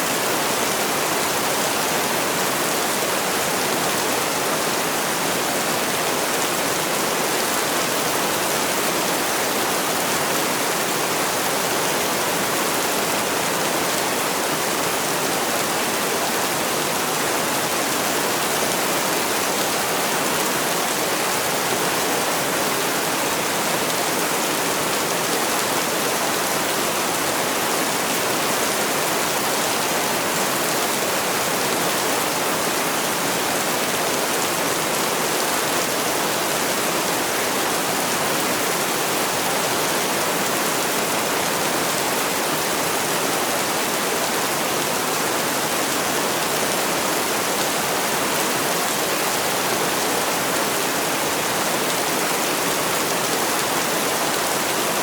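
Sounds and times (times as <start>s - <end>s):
heavy rain: 0.0s - 55.0s.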